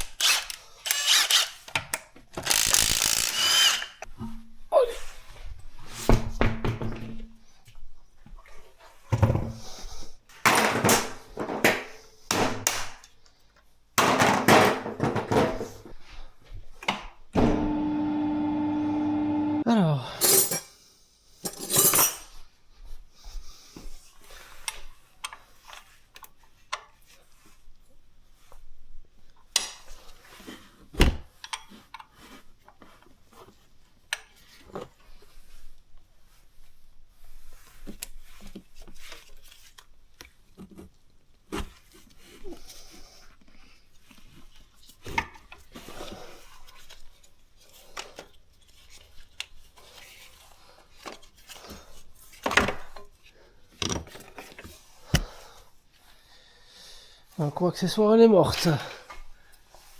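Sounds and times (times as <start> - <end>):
metal tools clinking: 20.2 - 20.8, 21.4 - 22.4.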